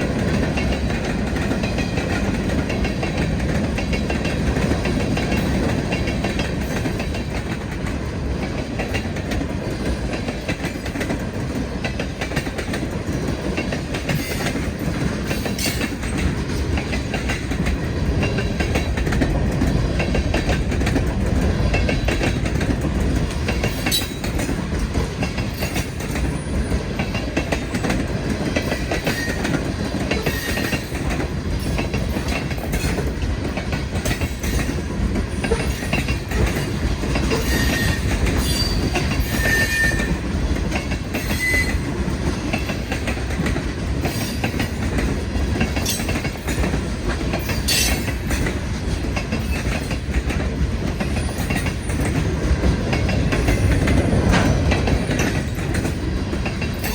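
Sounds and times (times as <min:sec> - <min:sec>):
freight train rumbling: 0:00.0 - 0:56.9
wheels clicking over rail joints: 0:00.0 - 0:56.9
high wheel squeals: 0:37.4 - 0:40.1, 0:41.2 - 0:41.8.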